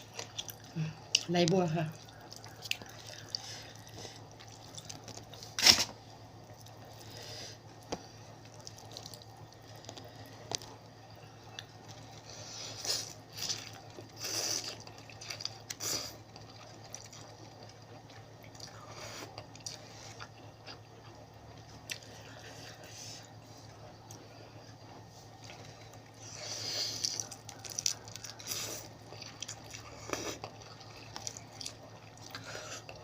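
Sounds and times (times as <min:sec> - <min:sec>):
person chewing and slurping: 0:11.5 - 0:21.2.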